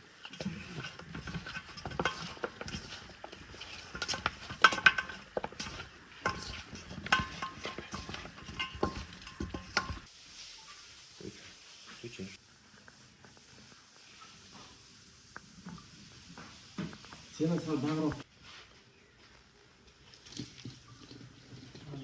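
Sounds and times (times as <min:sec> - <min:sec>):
metal utensil clanking on cauldron: 0:00.2 - 0:10.1.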